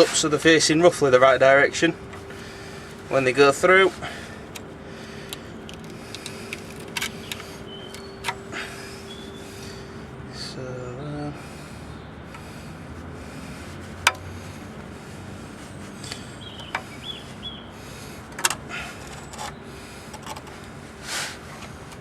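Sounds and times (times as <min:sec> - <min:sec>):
metal clicks and taps: 0:04.4 - 0:08.4, 0:14.0 - 0:14.3, 0:18.3 - 0:18.6.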